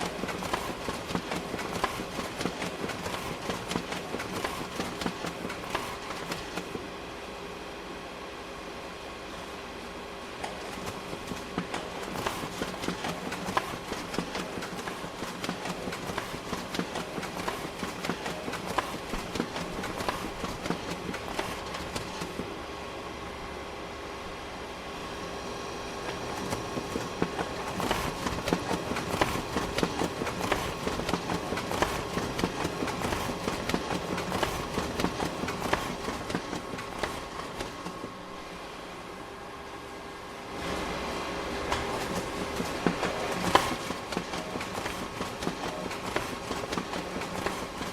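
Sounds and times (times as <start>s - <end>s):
photocopier humming: 0.0s - 7.3s, 9.9s - 23.2s, 24.8s - 47.9s
photocopier clicks and knocks: 26.1s - 38.2s, 41.7s - 47.9s.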